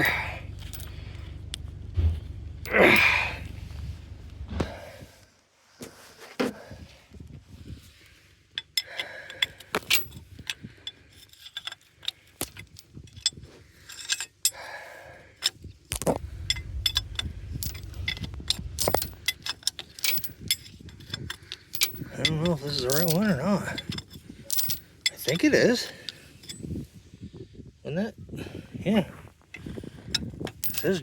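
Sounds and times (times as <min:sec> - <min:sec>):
metal hand tools clinking: 0:00.0 - 0:01.1, 0:16.3 - 0:26.6, 0:30.5 - 0:31.0
low rumble: 0:00.0 - 0:05.2, 0:15.9 - 0:22.2.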